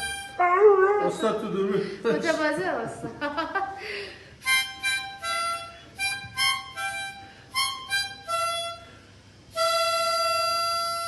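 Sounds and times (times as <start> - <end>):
harmonica playing a tune: 0.0 - 0.5, 4.4 - 11.0.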